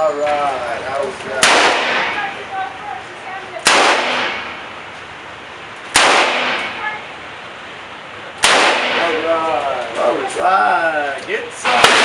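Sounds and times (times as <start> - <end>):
gunshots with ringing echo: 1.4 - 2.4, 3.6 - 4.8, 5.9 - 7.0, 8.4 - 9.4, 11.6 - 12.0.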